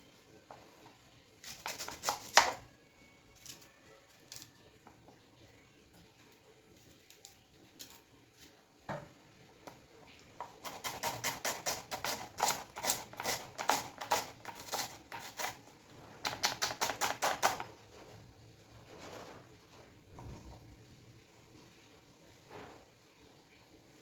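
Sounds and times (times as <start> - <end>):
knife chopping on cutting board: 1.5 - 2.6, 10.4 - 15.6, 16.3 - 17.6.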